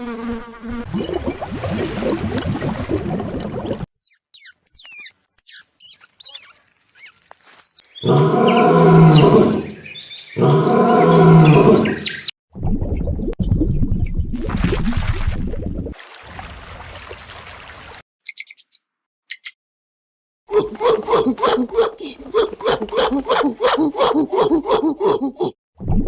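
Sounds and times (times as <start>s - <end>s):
high squeaky animal chirps: 3.9s - 8.1s, 18.2s - 19.6s
long low animal calls: 8.0s - 9.8s.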